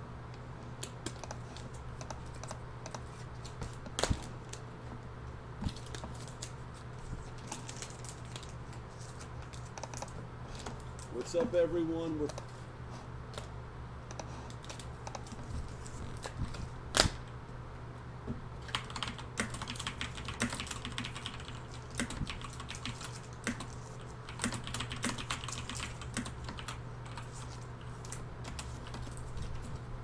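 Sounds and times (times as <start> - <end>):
low electrical hum: 0.0 - 30.0
computer keyboard typing: 1.0 - 3.8, 9.2 - 10.8, 14.1 - 15.4, 18.6 - 29.2.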